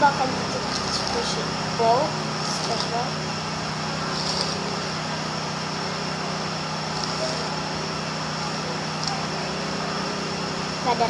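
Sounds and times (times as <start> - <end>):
machine droning: 0.0 - 11.0.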